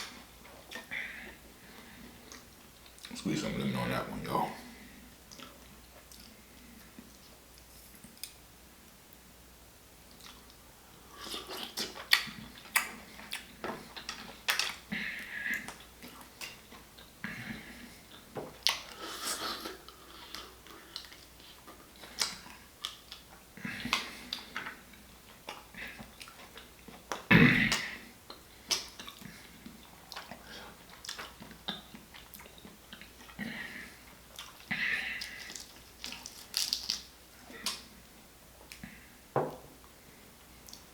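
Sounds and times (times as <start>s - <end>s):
chewing and lip-smacking: 5.3s - 8.4s, 10.1s - 10.6s, 11.2s - 17.2s, 18.1s - 37.9s
person eating wetly: 10.1s - 37.9s.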